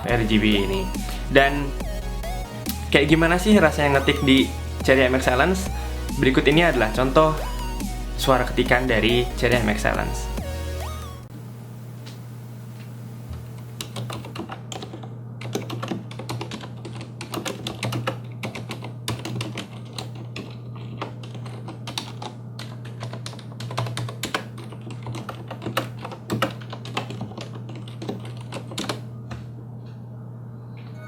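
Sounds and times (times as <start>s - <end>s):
mechanical keyboard typing: 13.8s - 29.0s.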